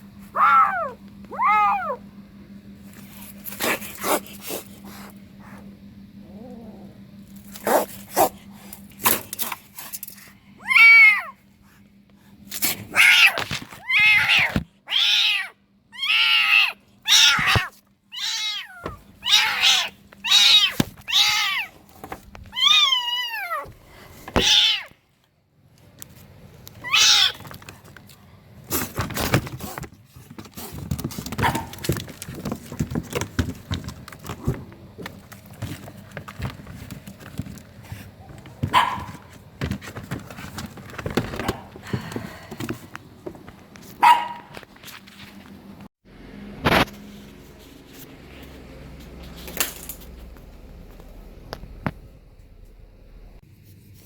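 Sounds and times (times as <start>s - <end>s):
kitten meowing: 0.4s - 2.0s, 12.9s - 21.7s, 26.8s - 27.4s.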